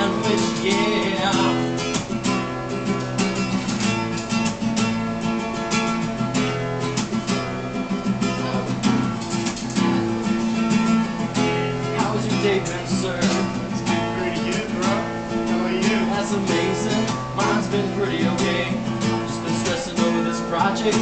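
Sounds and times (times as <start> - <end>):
acoustic guitar strumming: 0.0 - 21.0.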